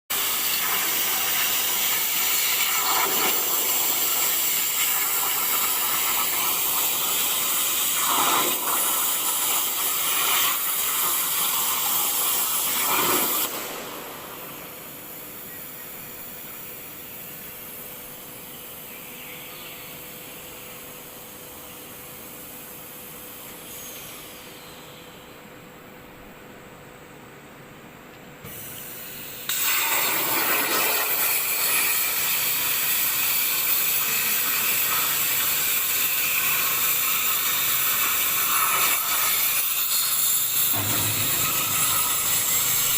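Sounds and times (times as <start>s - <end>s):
cutting torch hissing: 0.1s - 17.2s, 28.4s - 42.9s.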